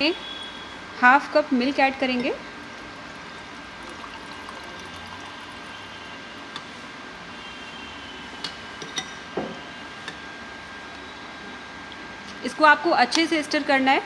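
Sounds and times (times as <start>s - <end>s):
milk pouring into a bowl: 3.2s - 6.6s.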